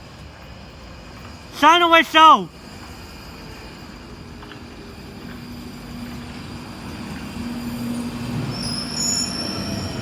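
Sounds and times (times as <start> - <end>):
train running into platform: 0.0 - 10.0
high-pitched squeal: 5.0 - 10.0.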